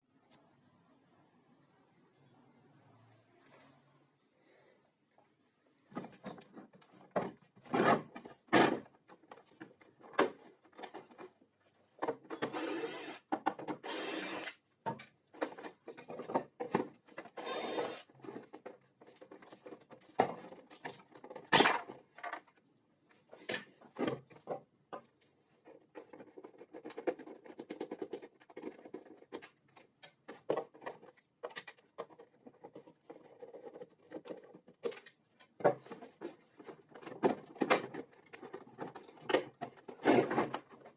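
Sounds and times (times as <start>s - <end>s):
handling knocks and clicks: 5.9s - 12.5s, 14.8s - 17.4s, 18.2s - 22.6s, 23.3s - 40.9s.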